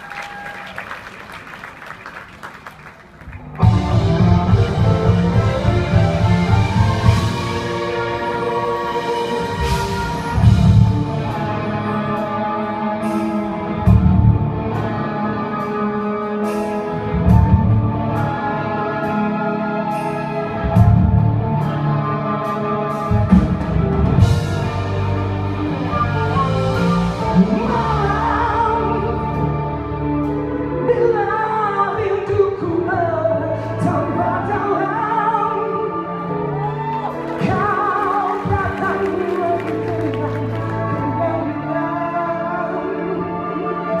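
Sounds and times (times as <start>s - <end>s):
orchestral accompaniment: 3.4s - 44.0s
person singing: 25.5s - 44.0s.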